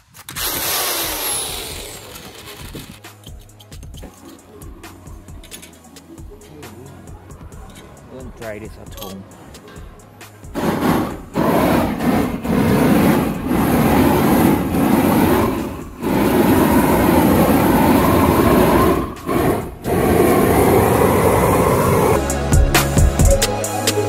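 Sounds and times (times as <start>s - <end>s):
sander on wood: 0.4s - 3.0s, 10.5s - 22.2s.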